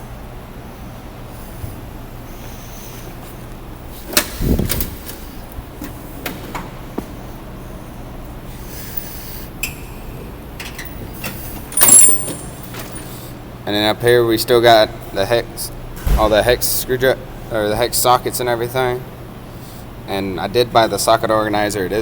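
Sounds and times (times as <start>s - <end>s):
drawer sliding thud: 16.0s - 16.6s.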